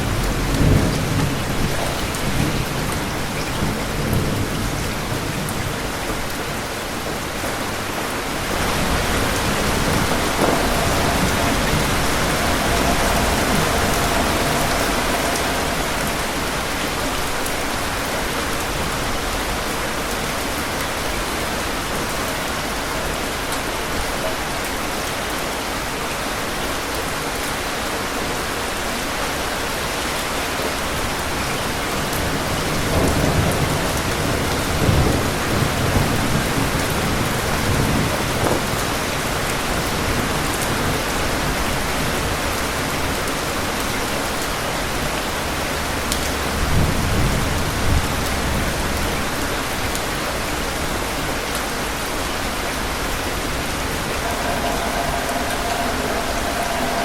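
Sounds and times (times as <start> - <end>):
rolling thunder: 0.0 - 19.9, 52.7 - 57.0
steady rain: 0.0 - 57.0.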